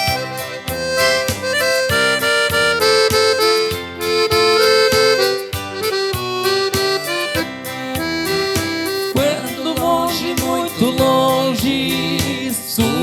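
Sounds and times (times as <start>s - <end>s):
button accordion melody: 0.0s - 10.2s
strummed guitar: 0.0s - 13.0s.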